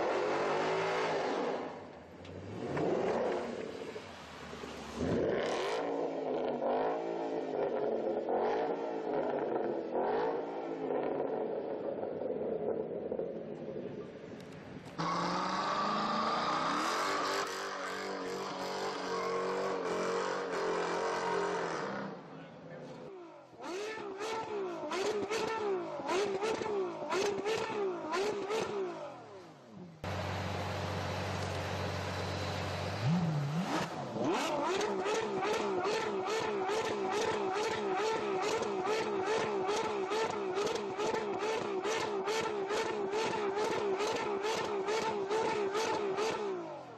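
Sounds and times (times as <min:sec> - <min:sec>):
sports car engine revving: 0:30.0 - 0:46.7.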